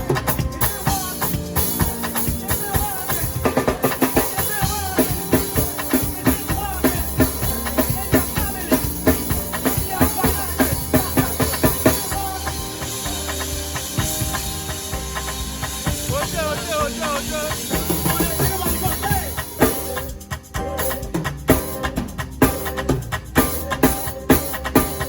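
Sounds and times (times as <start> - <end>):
bass: 0.0 - 25.0
drum kit playing a beat: 0.0 - 25.0.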